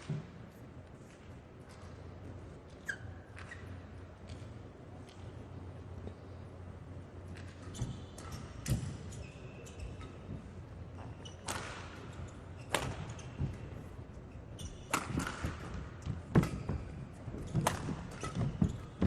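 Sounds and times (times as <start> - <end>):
shoes squeaking on court floor: 1.0 - 19.0
rackets striking shuttlecock: 12.7 - 13.6, 14.9 - 16.7.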